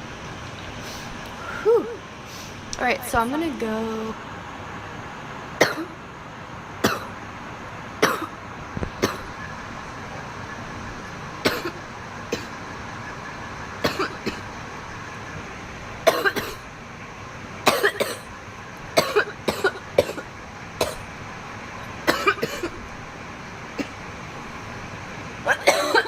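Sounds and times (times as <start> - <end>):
woman coughing: 5.6 - 5.9, 6.8 - 7.1, 16.1 - 16.6, 17.7 - 18.2, 19.0 - 20.2, 22.1 - 22.8, 25.5 - 26.0.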